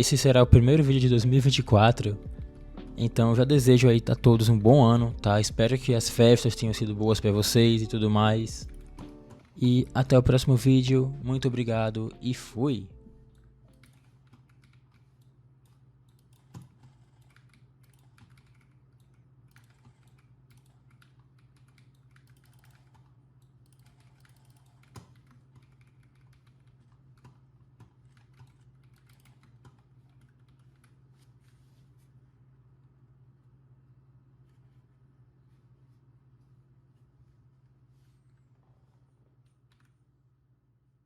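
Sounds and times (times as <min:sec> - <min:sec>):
mechanical keyboard typing: 0:08.4 - 0:10.2, 0:13.2 - 0:31.0.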